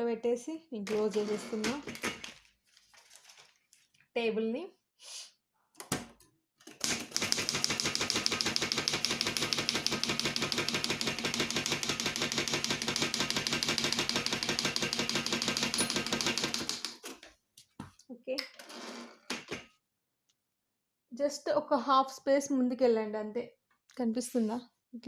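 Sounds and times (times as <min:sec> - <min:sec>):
typewriter keys typing: 0:06.8 - 0:17.0.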